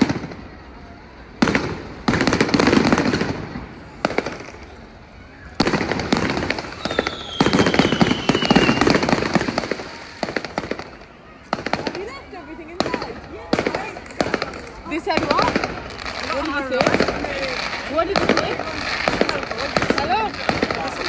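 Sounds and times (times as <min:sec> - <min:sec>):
fireworks bangs and crackles: 0:00.0 - 0:21.0
falling firework whistle: 0:04.0 - 0:11.1.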